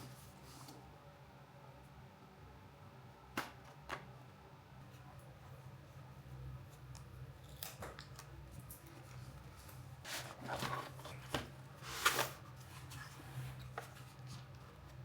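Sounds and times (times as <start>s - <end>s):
handling rustles and scrapes: 0.0s - 0.9s, 8.8s - 15.0s.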